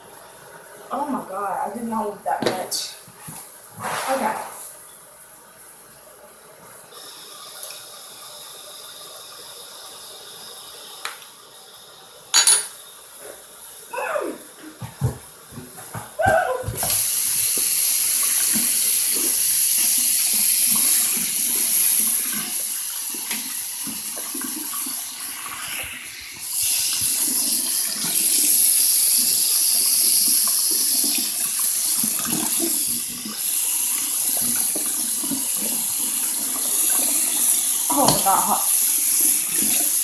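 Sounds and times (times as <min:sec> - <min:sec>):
tap water running into sink: 0:01.0 - 0:04.7, 0:14.5 - 0:40.0.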